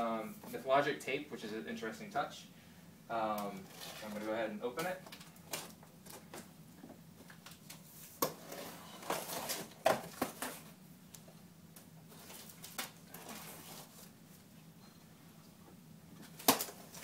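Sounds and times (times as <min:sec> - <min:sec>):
packing tape rustling: 0:12.1 - 0:14.1.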